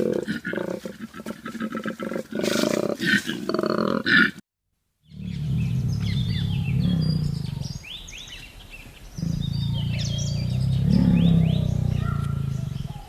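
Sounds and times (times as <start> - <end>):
birds chirping: 5.0 - 13.0
large animal growling: 5.1 - 8.0, 9.1 - 13.0.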